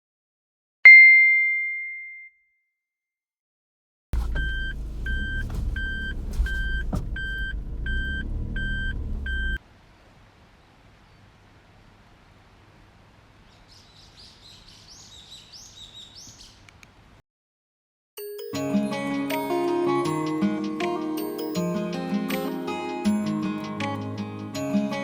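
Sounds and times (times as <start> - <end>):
car engine running low: 4.2 - 9.6
reversing beeper: 4.2 - 9.6
bright chime: 18.2 - 20.3.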